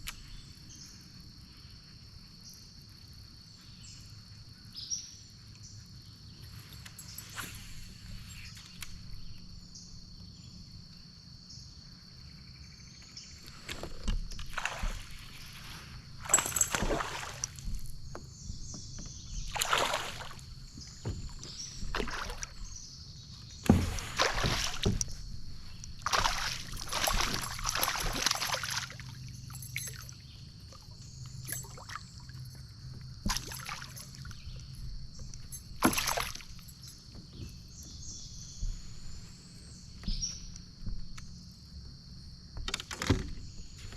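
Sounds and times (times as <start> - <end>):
high insect trill: 0.0 - 43.9
paddle splashing in water: 13.7 - 34.6, 35.6 - 38.0.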